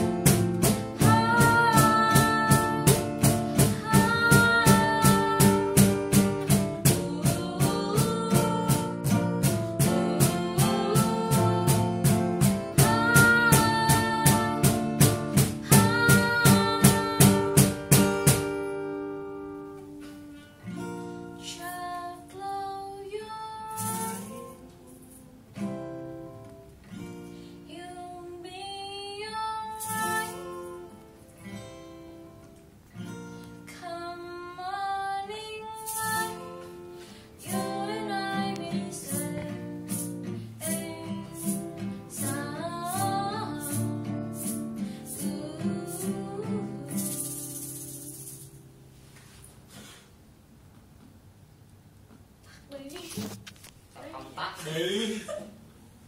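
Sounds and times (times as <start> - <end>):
woman singing: 0.0 - 18.0, 21.4 - 25.8, 27.7 - 30.9, 33.7 - 36.8, 37.4 - 48.6
acoustic guitar: 0.0 - 56.0.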